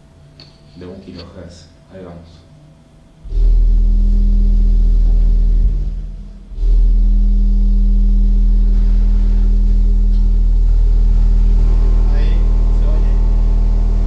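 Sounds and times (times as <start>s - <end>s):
distorted low test tone hum: 1.2s - 14.0s.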